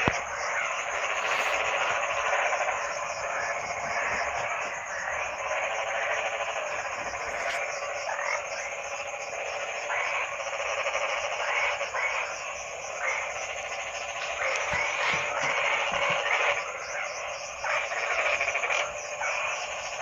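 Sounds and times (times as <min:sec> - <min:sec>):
chorus of frogs croaking: 0:00.0 - 0:20.0
louder frog calls: 0:00.0 - 0:20.0.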